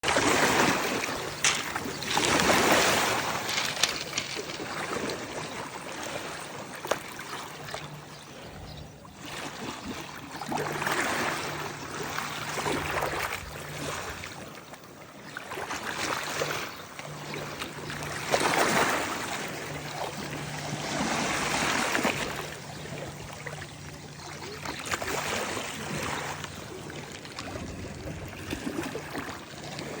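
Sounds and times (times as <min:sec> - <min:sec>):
sea water washing in: 0:00.0 - 0:08.0, 0:15.6 - 0:30.0.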